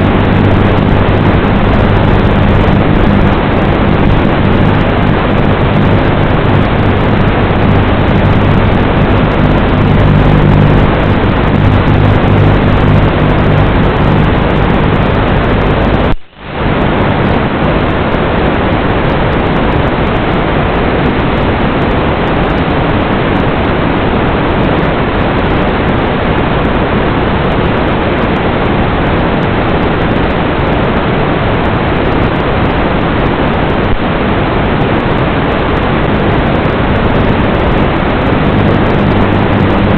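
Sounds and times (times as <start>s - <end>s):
faint low hum: 0.0s - 22.8s
loud static hiss: 0.0s - 39.9s.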